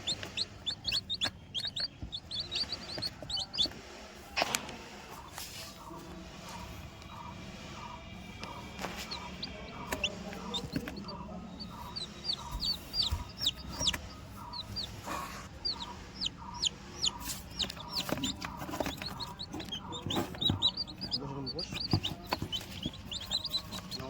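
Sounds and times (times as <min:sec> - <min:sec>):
baby chicks peeping: 0:00.0 - 0:24.0.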